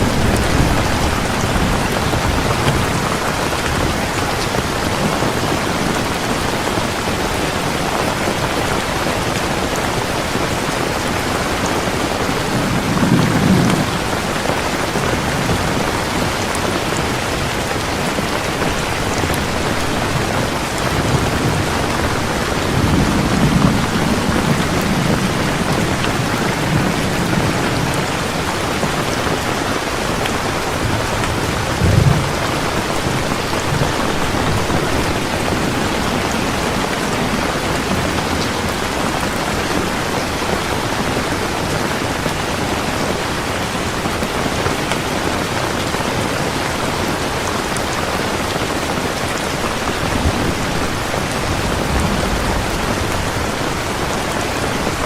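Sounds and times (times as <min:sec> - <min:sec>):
distant thunder rolling: 0:00.0 - 0:04.2, 0:11.9 - 0:39.4, 0:49.9 - 0:55.0
heavy rain falling: 0:00.0 - 0:55.0.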